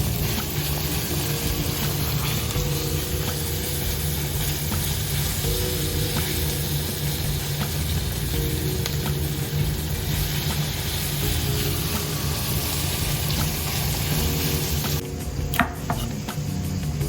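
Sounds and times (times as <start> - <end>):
background music: 0.0 - 17.0
food sizzling in a pot: 0.0 - 17.0.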